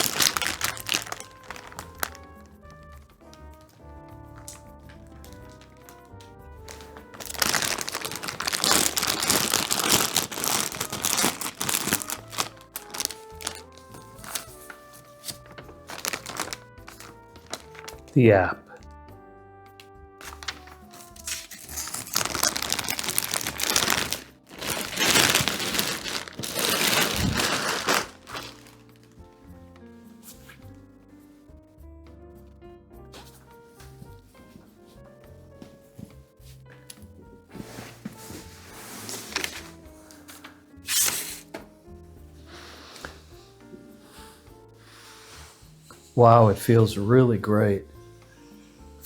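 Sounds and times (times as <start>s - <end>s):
plastic packaging crinkling: 0.0s - 2.6s, 6.7s - 18.2s, 20.2s - 29.2s, 38.2s - 41.5s
background music: 0.0s - 49.0s.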